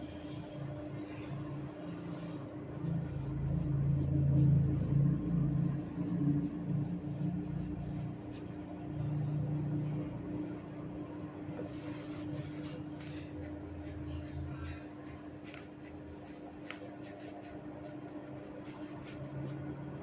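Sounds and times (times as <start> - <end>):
low rumble: 0.0 - 14.7
steady low hum: 0.0 - 20.0.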